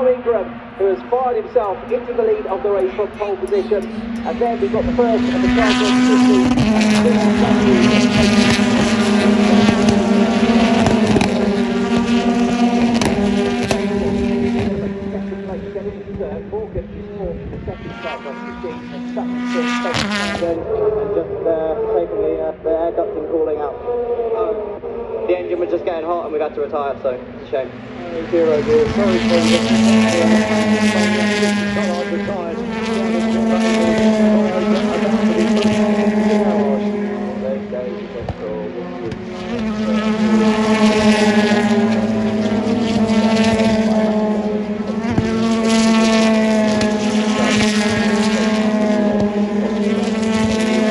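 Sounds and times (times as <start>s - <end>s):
race cars racing past: 0.0s - 50.9s
gearshift cracks and exhaust pops: 1.1s - 16.3s, 39.0s - 50.9s.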